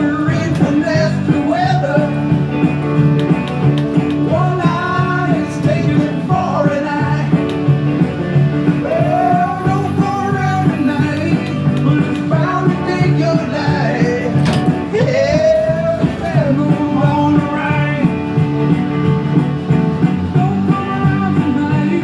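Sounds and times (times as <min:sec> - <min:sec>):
rock music: 0:00.0 - 0:22.0.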